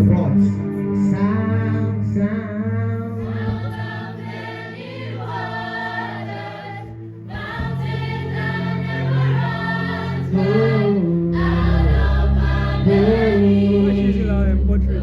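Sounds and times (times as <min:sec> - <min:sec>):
keyboard and bass chords: 0:00.0 - 0:15.0
choir singing: 0:03.0 - 0:15.0.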